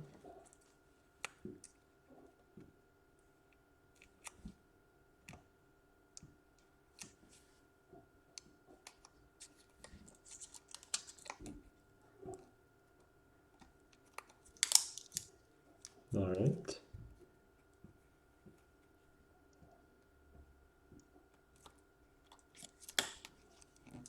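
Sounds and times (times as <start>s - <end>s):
laptop parts clicking and tapping: 13.6s - 16.0s.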